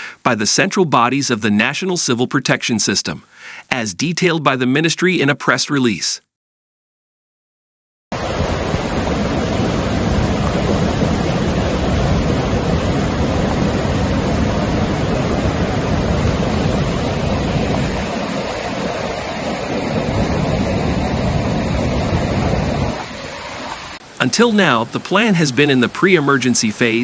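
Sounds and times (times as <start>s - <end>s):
fast-flowing water rushing: 8.1s - 27.0s.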